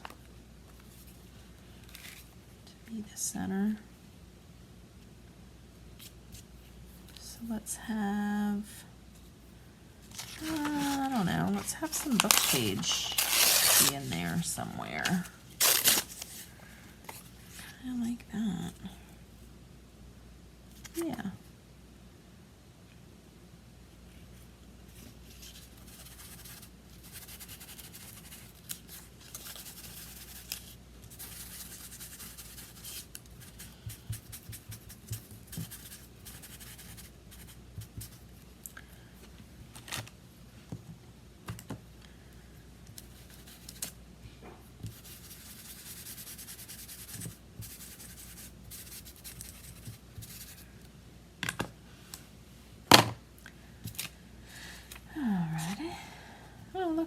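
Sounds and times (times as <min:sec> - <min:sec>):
paper rustling and scraping: 0:10.1 - 0:16.5.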